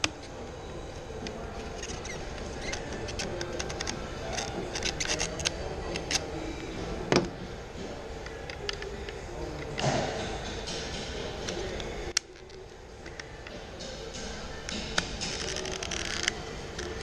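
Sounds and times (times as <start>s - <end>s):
plastic parts clicking and tapping: 1.2s - 6.2s.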